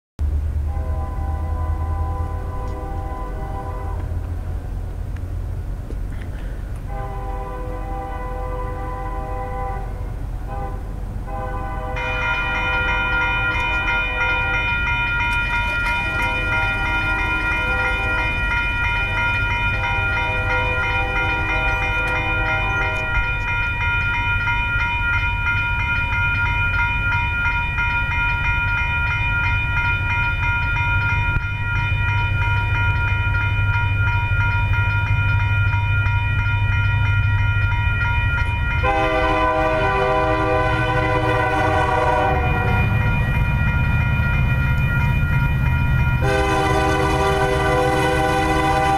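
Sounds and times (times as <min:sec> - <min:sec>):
locomotive diesel engines rumbling: 0:00.2 - 0:48.9
locomotive air horn chord: 0:00.6 - 0:04.4, 0:06.9 - 0:14.9, 0:15.8 - 0:23.5, 0:38.8 - 0:43.1, 0:46.2 - 0:48.9.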